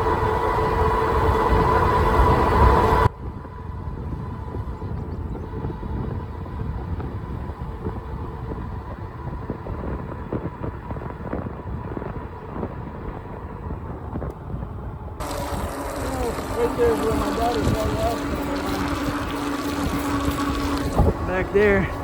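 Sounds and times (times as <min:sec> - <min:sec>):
wind on microphone: 0:00.0 - 0:22.0
tyres on rough road: 0:05.0 - 0:22.0
faint high whine: 0:15.2 - 0:22.0.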